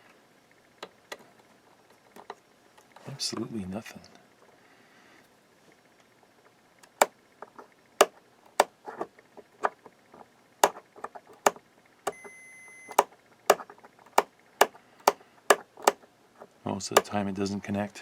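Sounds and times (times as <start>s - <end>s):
power switch clicking: 6.8s - 7.1s, 12.9s - 13.1s
multimeter short beep: 12.1s - 13.0s.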